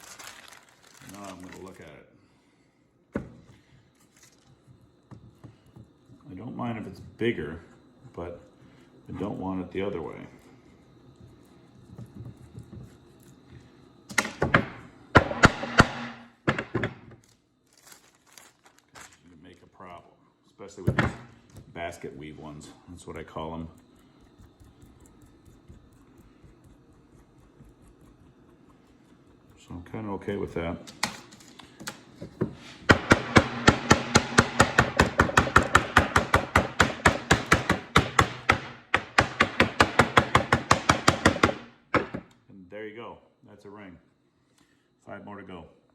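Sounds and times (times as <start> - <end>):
soft handling noise: 17.2 - 19.4.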